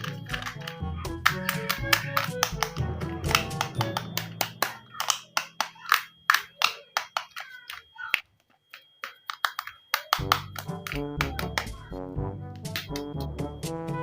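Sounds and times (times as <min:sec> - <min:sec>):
background music: 0:00.0 - 0:06.0, 0:10.2 - 0:14.0
sharp taps and clicks: 0:00.0 - 0:11.9, 0:12.6 - 0:13.4.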